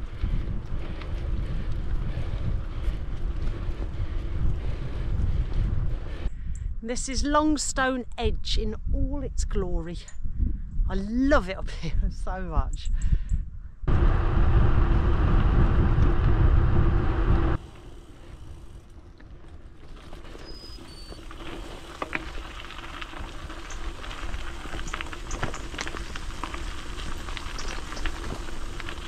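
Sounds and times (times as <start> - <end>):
bicycle clicks and rattles: 0.0 - 6.6, 17.6 - 29.0
bicycle tyre rumble on rough track: 0.0 - 6.7, 13.9 - 29.0
wind buffeting microphone: 0.0 - 7.6, 8.2 - 19.5.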